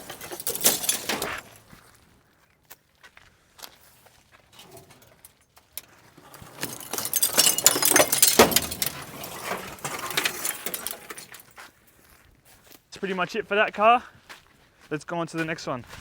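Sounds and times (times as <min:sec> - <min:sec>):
scrap metal and glass clattering: 0:00.0 - 0:01.8, 0:04.6 - 0:11.6.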